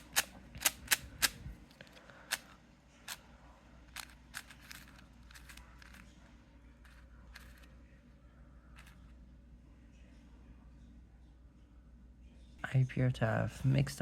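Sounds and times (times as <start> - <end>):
speed cube clicking: 0.0 - 1.4, 3.9 - 6.0.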